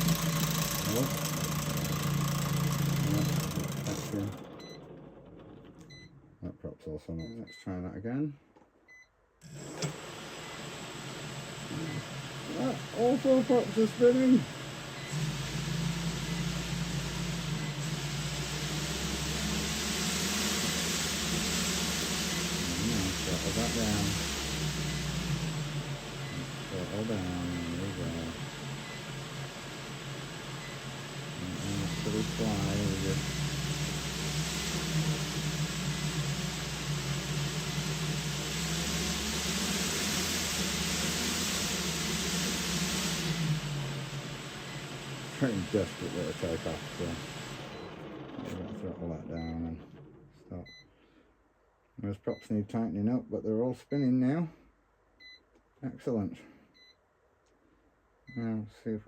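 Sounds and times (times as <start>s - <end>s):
quadcopter motors humming: 0.0s - 4.4s, 11.6s - 47.8s
propellers airy hiss: 15.2s - 28.7s.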